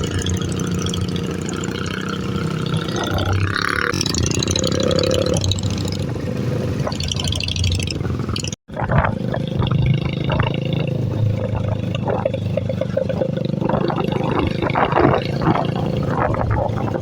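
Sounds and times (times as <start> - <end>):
clatter: 0.0 - 17.0
motorcycle engine running: 0.0 - 17.0
wind noise: 0.0 - 17.0.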